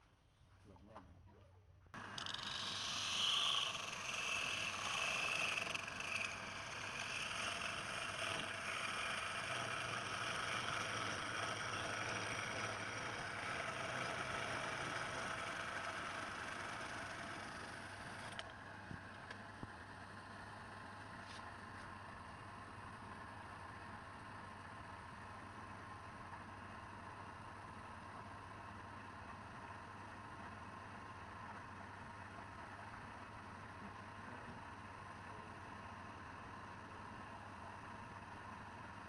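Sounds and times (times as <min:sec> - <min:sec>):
tool scraping spinning wood: 0:02.0 - 0:18.5
wood lathe running: 0:02.0 - 0:18.5.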